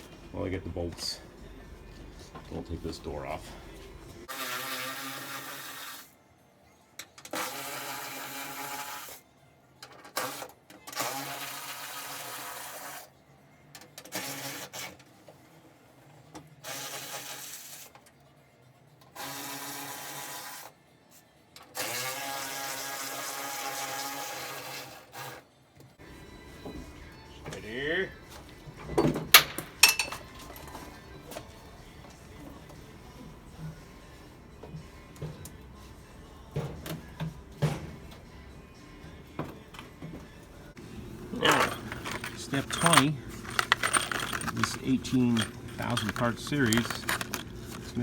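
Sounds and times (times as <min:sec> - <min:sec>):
cordless power tool whining: 0:40.8 - 0:48.0.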